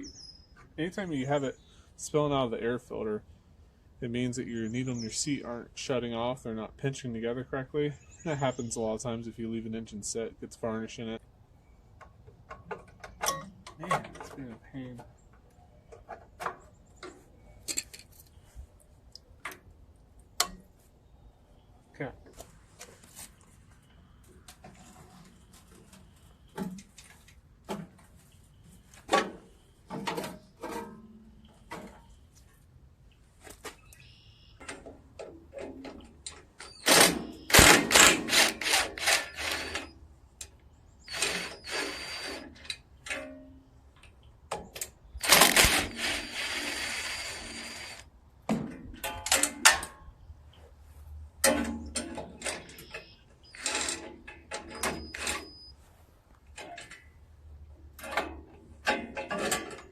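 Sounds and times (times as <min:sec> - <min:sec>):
hand tools clicking on metal parts: 0:17.7 - 0:18.3.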